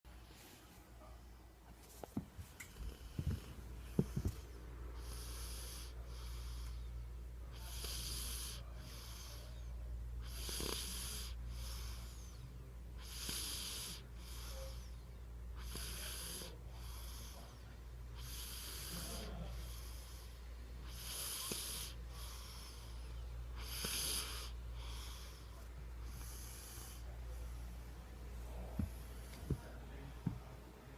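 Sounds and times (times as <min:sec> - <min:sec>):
boy snoring: 0:07.6 - 0:09.5, 0:10.2 - 0:12.1, 0:13.0 - 0:14.8, 0:15.6 - 0:17.5, 0:18.2 - 0:20.1, 0:20.8 - 0:22.9, 0:23.6 - 0:25.2.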